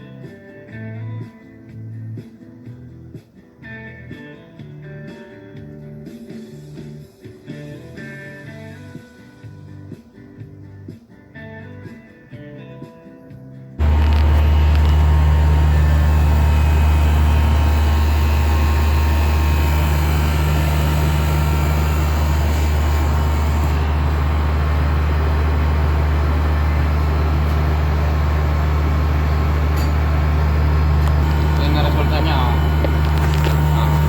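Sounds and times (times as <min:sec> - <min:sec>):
air conditioner humming: 0:13.8 - 0:34.0.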